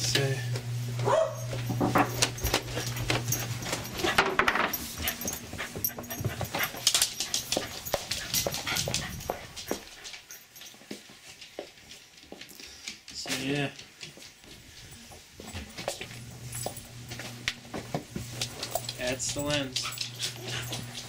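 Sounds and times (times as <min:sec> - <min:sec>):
dog panting: 0:02.6 - 0:10.5, 0:19.7 - 0:21.0.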